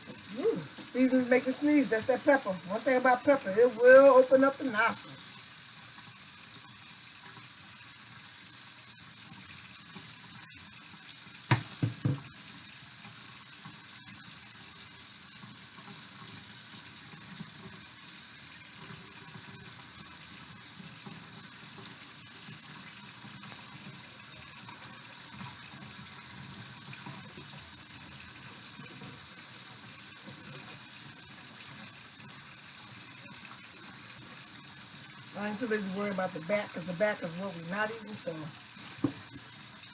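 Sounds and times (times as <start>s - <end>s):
tap running into sink: 11.4s - 13.8s, 38.8s - 39.6s
louder knocks: 11.5s - 12.3s.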